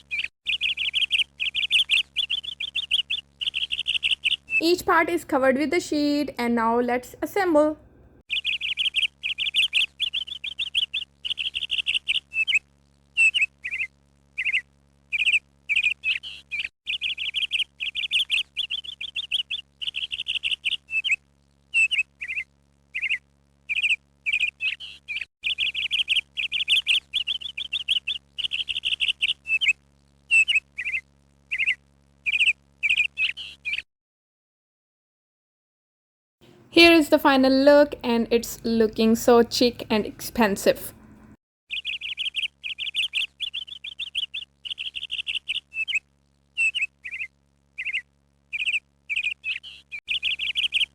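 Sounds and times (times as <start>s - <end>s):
faint steady hum: 36.4s - 41.4s
songbirds chirping: 36.5s - 46.0s.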